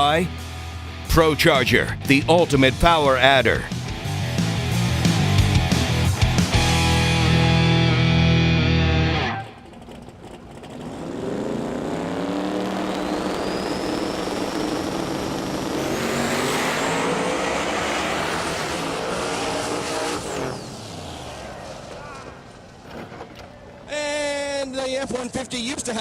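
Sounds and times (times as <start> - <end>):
high turbo whine: 0.0 - 23.0
truck engine at full throttle: 0.0 - 23.1.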